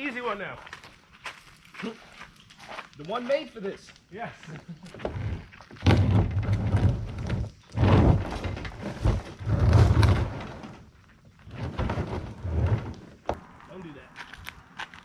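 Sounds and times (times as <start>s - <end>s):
plastic kayak scraping on dirt: 4.9s - 13.4s.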